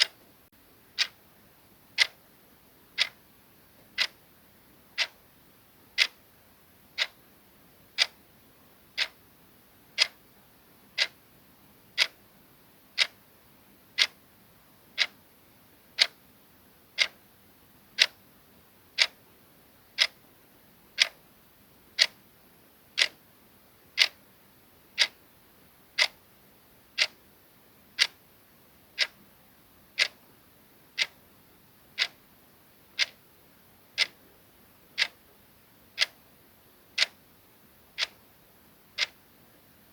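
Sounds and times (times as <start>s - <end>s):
clock ticking: 0.0s - 0.2s, 1.0s - 1.2s, 2.0s - 2.2s, 3.0s - 3.2s, 3.8s - 4.2s, 5.0s - 5.2s, 6.0s - 6.2s, 7.0s - 7.2s, 8.0s - 8.2s, 9.0s - 9.2s, 10.0s - 10.2s, 11.0s - 11.2s, 12.0s - 12.2s, 13.0s - 13.2s, 14.0s - 14.2s, 15.0s - 15.2s, 16.0s - 16.2s, 17.0s - 17.2s, 18.0s - 18.2s, 19.0s - 19.2s, 20.0s - 20.2s, 21.0s - 21.2s, 22.0s - 22.2s, 23.0s - 23.2s, 24.0s - 24.2s, 25.0s - 25.2s, 26.0s - 26.2s, 27.0s - 27.2s, 28.0s - 28.2s, 29.0s - 29.2s, 30.0s - 30.2s, 31.0s - 31.2s, 32.0s - 32.2s, 33.0s - 33.2s, 34.0s - 34.2s, 35.0s - 35.3s, 36.0s - 36.2s, 37.0s - 37.2s, 38.0s - 38.2s, 39.0s - 39.2s.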